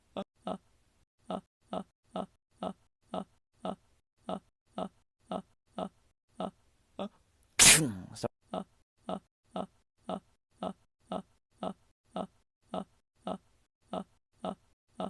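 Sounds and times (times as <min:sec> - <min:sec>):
person's pre-sneeze gasps: 0:07.6 - 0:08.2.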